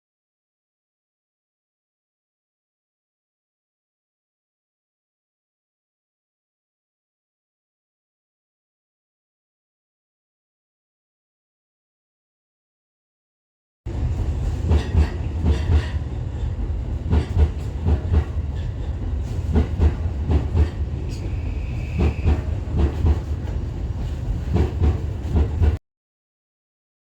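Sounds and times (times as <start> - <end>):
train running rumble: 13.9 - 25.8.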